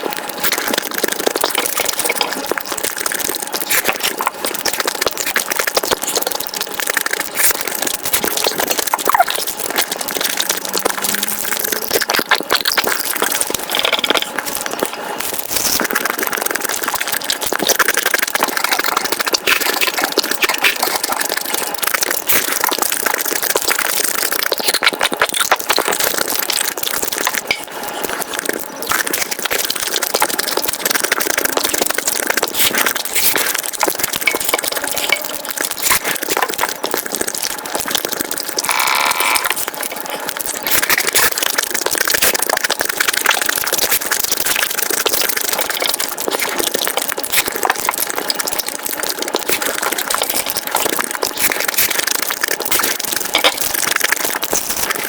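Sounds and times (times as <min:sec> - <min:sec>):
sped up chewing and crunching: 0:00.0 - 0:55.0
brief higher tone: 0:10.6 - 0:12.2.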